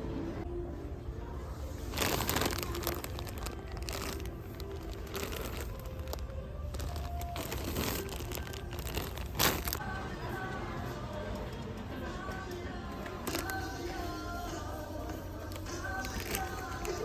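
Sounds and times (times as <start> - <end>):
rustling and crinkling: 1.6 - 9.8, 12.9 - 17.0.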